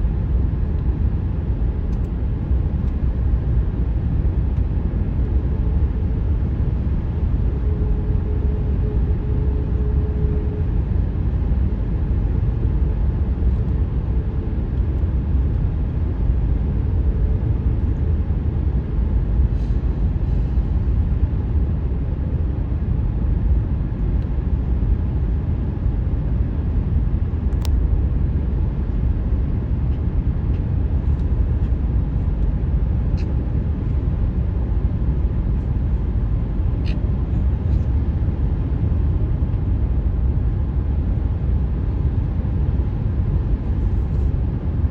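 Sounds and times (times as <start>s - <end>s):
faint steady hum: 0.0s - 44.9s
light ticks: 27.5s - 27.8s.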